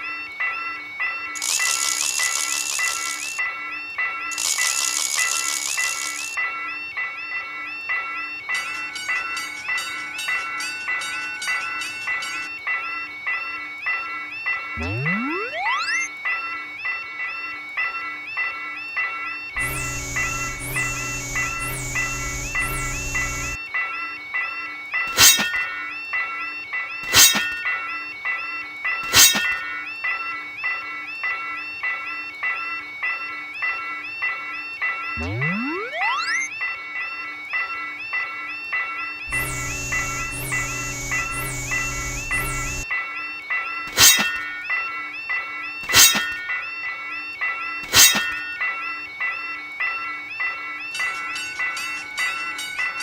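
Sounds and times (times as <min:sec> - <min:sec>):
railroad crossing bell ringing: 0:00.0 - 0:53.0
synthesized note pattern: 0:14.8 - 0:16.1, 0:19.6 - 0:23.6, 0:35.2 - 0:36.5, 0:39.3 - 0:42.9
droning musical backing: 0:19.6 - 0:23.6, 0:39.3 - 0:42.9.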